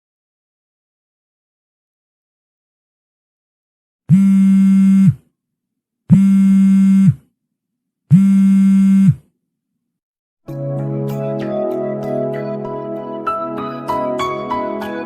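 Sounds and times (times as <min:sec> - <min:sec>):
low electronic buzzer tones: 0:04.1 - 0:05.2, 0:06.1 - 0:07.2, 0:08.1 - 0:09.2
music: 0:10.4 - 0:15.0.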